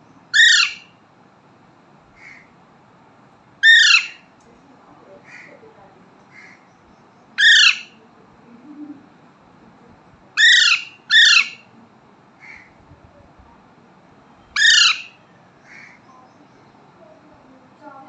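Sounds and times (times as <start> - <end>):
parrot chick squawking: 0.3 - 0.9, 3.6 - 4.3, 7.4 - 8.0, 10.4 - 11.7, 14.5 - 16.0
faint soft bird calls: 2.1 - 2.6, 14.2 - 17.6.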